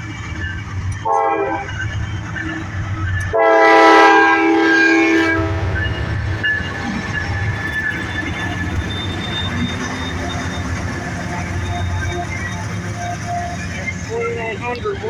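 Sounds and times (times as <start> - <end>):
diesel engine rumble: 0.0 - 15.0
locomotive air horn blasts: 1.0 - 1.8, 3.2 - 5.9.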